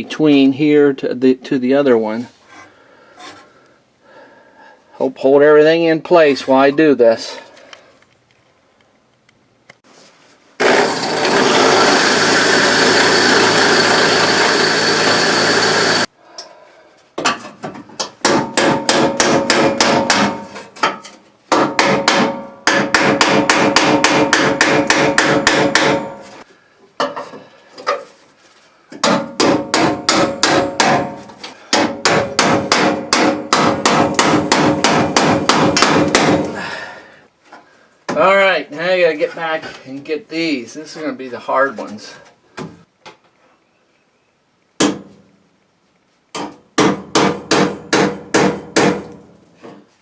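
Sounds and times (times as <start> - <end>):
steady tool noise: 10.6 - 16.2.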